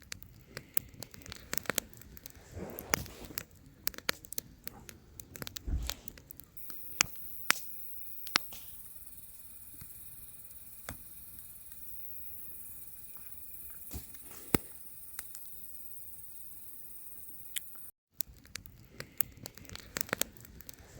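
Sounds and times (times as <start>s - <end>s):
campfire crackling and popping: 0.0s - 20.9s
faint steady hiss: 6.6s - 17.9s.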